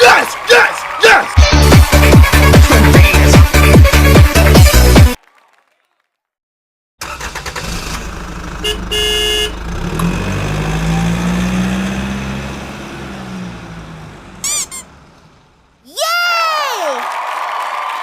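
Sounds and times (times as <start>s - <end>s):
vehicle engine running: 8.0s - 15.8s
short horn honk: 8.6s - 9.6s.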